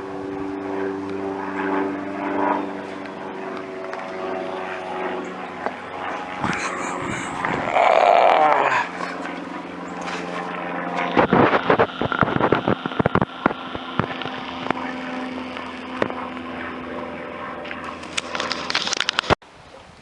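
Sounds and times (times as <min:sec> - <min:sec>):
propeller airplane engine drone: 0:00.0 - 0:19.4.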